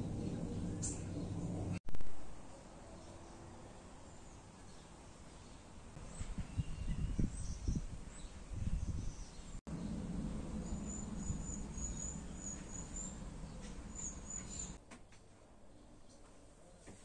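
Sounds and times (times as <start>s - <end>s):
birds chirping: 0.0s - 1.8s, 2.9s - 14.8s
steady low rumble: 0.0s - 1.8s, 7.1s - 14.8s.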